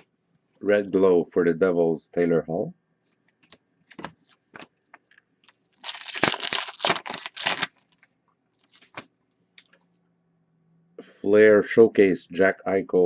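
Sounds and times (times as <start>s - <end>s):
packaging crinkling: 3.9s - 9.1s.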